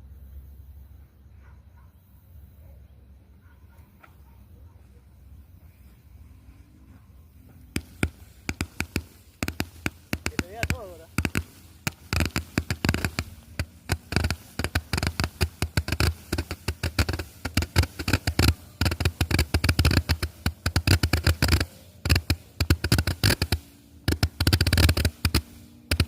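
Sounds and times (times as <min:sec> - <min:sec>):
firework pops: 0:07.4 - 0:26.0.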